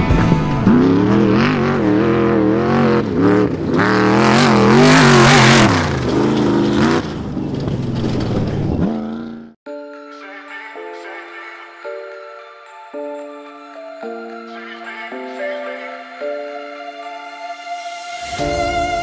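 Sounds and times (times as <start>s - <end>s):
race vehicle engine revving: 0.0s - 9.6s
soft music with chiming tones: 9.7s - 19.0s.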